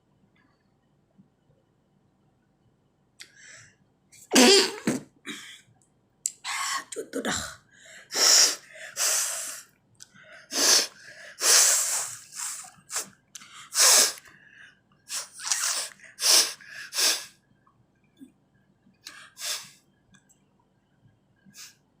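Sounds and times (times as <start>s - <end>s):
woman blowing her nose: 4.3s - 5.0s, 8.1s - 9.6s, 10.5s - 13.1s, 13.7s - 14.2s, 15.1s - 17.3s.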